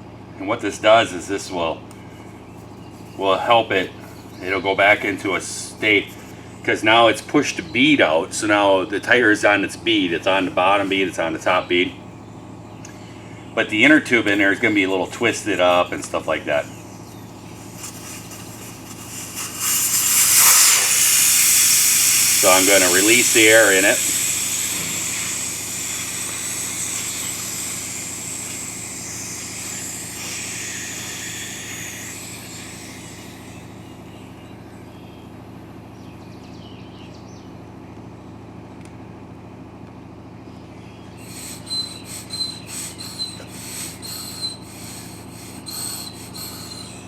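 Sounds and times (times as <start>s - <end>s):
steady low hum: 0.0s - 47.0s
air hissing from tire valve: 13.1s - 35.8s, 41.1s - 47.0s.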